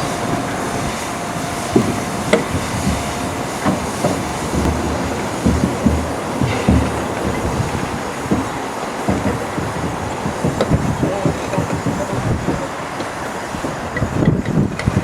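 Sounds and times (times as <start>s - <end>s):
train wheels clacking over rail joints: 0.0s - 15.0s
low thumps: 0.2s - 12.6s
sharp metallic knocks: 1.7s - 12.4s.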